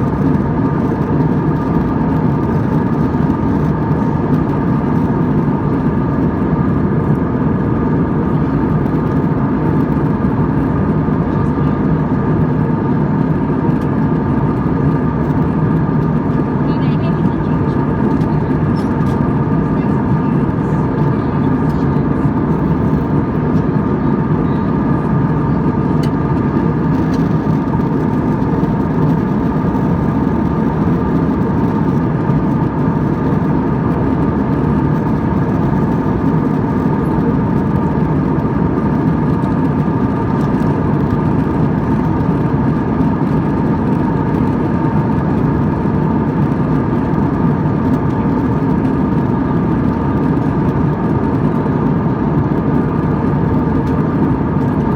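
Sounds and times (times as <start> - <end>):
jet engine low rush: 0.0 - 54.9.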